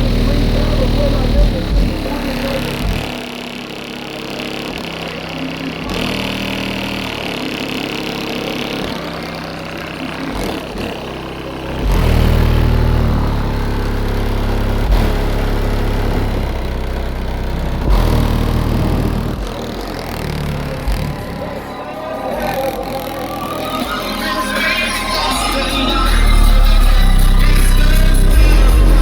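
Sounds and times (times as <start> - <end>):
heavy-bass song on car stereo: 0.0 - 29.0.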